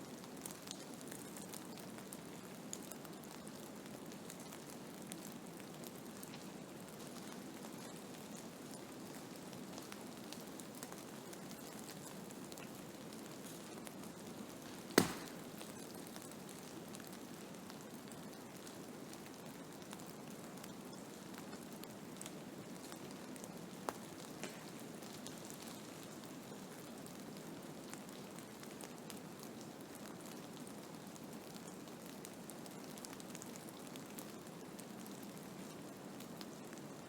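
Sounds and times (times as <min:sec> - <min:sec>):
sharp tap: 0:15.0 - 0:15.5.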